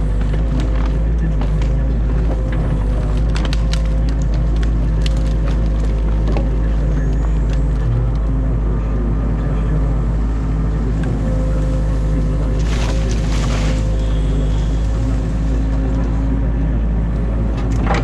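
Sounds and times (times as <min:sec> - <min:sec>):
excavator diesel engine running: 0:00.0 - 0:18.0
wood cracking and snapping: 0:00.1 - 0:08.3, 0:12.5 - 0:16.0.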